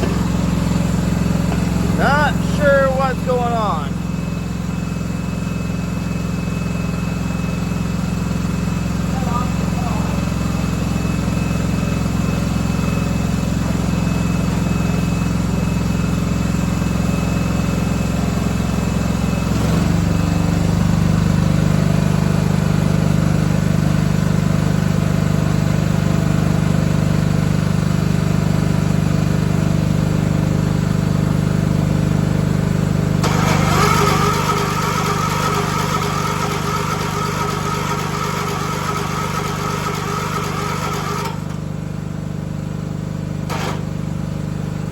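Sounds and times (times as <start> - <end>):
garden tractor engine running: 0.0 - 4.7, 30.7 - 44.9.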